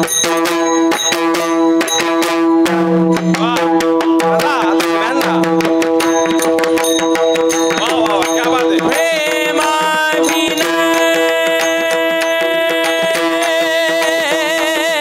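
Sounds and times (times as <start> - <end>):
hand drum strokes: 0.0 - 15.0
man singing devotional song: 3.2 - 15.0.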